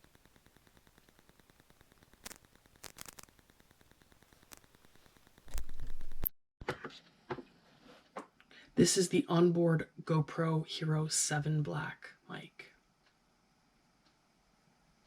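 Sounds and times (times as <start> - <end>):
faint microphone hiss: 0.0 - 6.3, 6.9 - 15.0
pops and crackles: 0.0 - 6.3.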